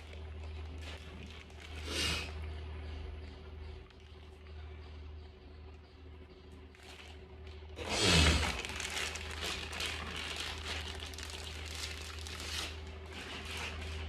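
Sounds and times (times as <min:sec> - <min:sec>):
plastic packaging crinkling: 0:08.2 - 0:14.0.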